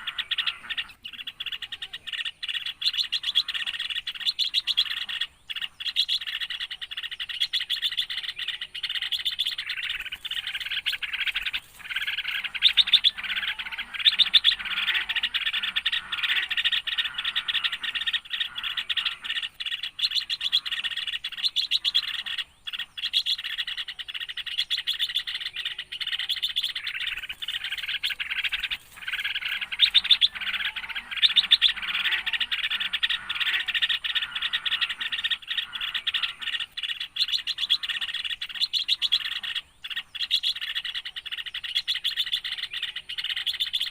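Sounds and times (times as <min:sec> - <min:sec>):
small birds chirping: 0:00.0 - 0:43.9.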